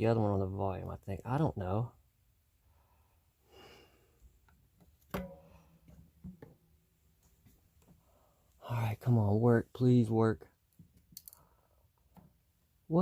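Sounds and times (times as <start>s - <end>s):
soft breath: 2.6s - 4.4s, 7.9s - 8.6s, 11.3s - 12.0s.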